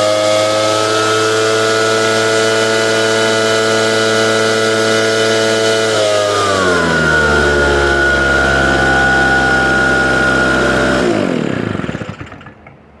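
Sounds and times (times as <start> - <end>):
leaf blower engine running: 0.0 - 12.7.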